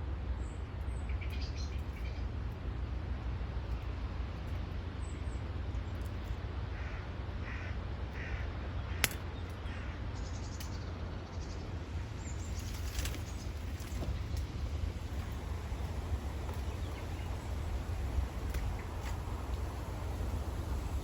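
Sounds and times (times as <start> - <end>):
sharp click: 9.0 - 9.6
low microphone rumble: 11.6 - 21.0.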